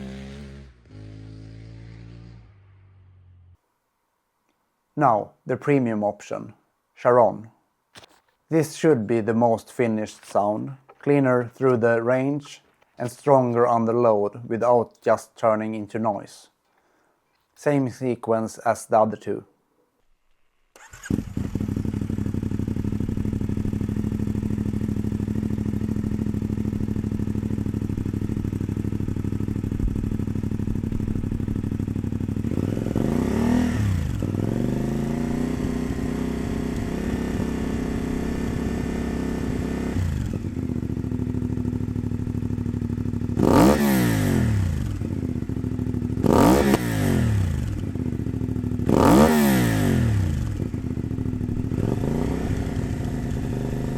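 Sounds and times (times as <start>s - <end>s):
motorcycle engine revving: 0.0s - 3.5s, 20.8s - 53.9s.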